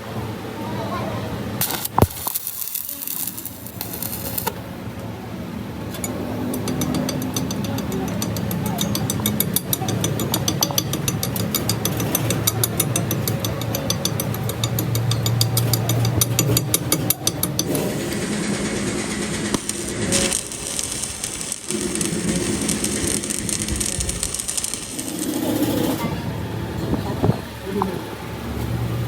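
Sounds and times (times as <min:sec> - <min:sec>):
steady hiss: 0:01.6 - 0:05.6, 0:17.7 - 0:26.0
lathe gears ticking: 0:05.9 - 0:26.0
lathe motor hum: 0:06.0 - 0:29.0.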